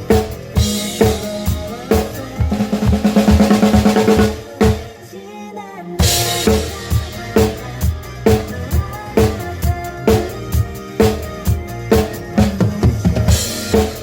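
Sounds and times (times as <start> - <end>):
drum kit playing: 0.0 - 5.1, 6.0 - 14.0
pop backing track: 0.0 - 14.0
snare drum fill: 2.0 - 4.9.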